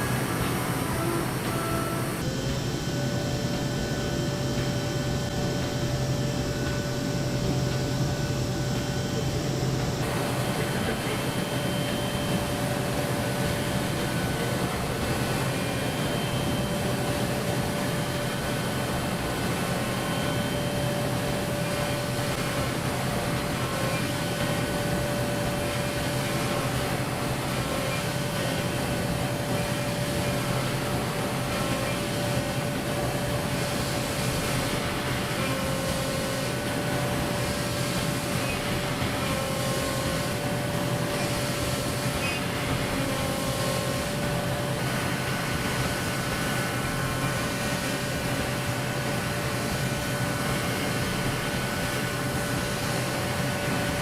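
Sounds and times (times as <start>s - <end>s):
pitched cutting whine: 0.0s - 52.5s.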